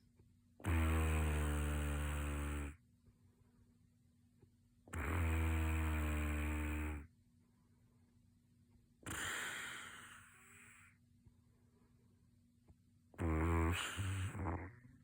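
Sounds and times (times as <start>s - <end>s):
person snoring: 0.6s - 2.8s, 4.9s - 7.1s, 9.1s - 11.0s, 13.2s - 15.0s.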